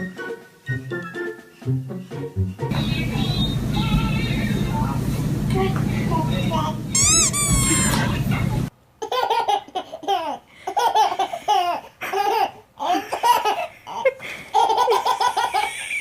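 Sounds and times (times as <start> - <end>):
baby laughing: 7.0 - 8.0, 9.0 - 16.0.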